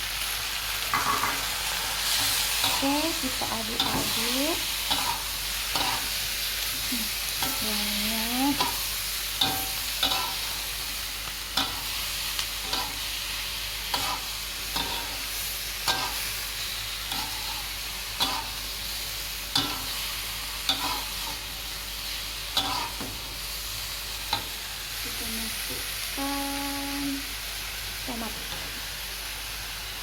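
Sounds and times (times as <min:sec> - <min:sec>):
food sizzling in hot oil: 0:00.0 - 0:30.0
spatula scraping a wok: 0:00.9 - 0:07.6, 0:08.4 - 0:23.6.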